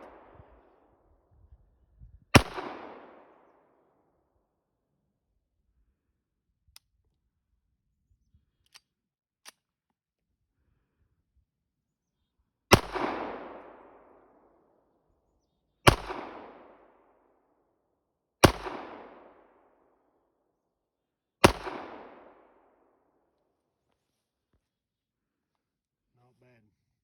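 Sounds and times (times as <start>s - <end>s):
pistol shots with echo: 2.4s - 3.6s, 12.7s - 14.3s, 15.8s - 16.9s, 18.4s - 19.5s, 21.4s - 22.7s.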